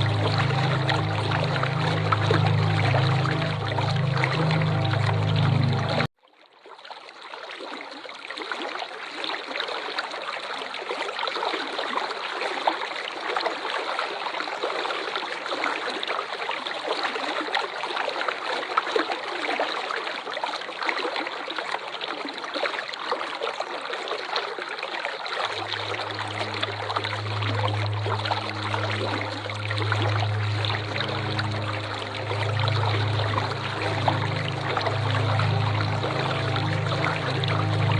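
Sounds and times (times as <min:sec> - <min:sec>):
low steady hum: 0:00.0 - 0:06.1, 0:25.5 - 0:37.9
waterfall rushing: 0:00.0 - 0:06.1, 0:25.5 - 0:37.9.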